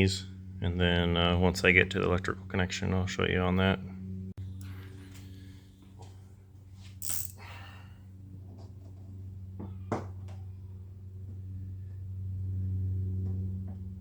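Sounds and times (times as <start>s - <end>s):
steady low hum: 0.0s - 14.0s
hand tools clicking: 7.0s - 7.4s.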